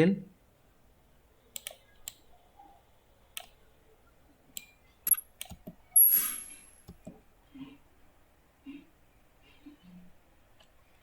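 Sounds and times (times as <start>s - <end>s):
computer mouse clicks: 1.5s - 2.3s, 3.3s - 3.6s, 4.5s - 5.8s.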